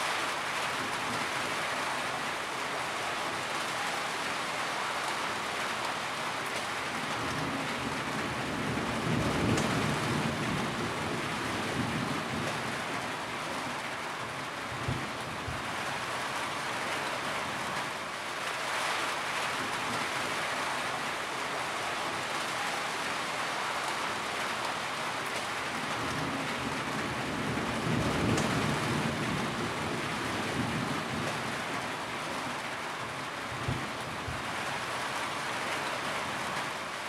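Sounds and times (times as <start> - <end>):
steady rain falling: 0.0 - 37.0
distant thunder rumble: 7.2 - 13.0, 26.0 - 31.8.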